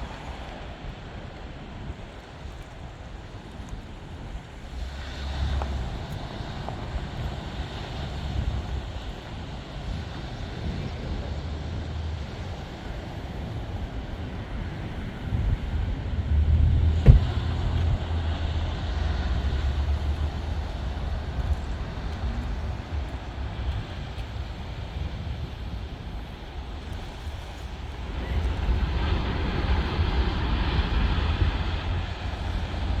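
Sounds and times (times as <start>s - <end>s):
wind buffeting microphone: 0.0s - 33.0s
sharp knock: 17.0s - 17.4s.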